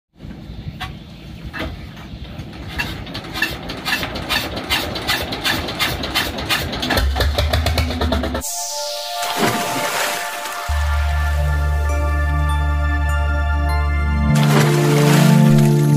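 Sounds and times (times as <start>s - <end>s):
diesel boat engine knocking: 0.9s - 8.4s
deep steady hum: 8.4s - 15.9s.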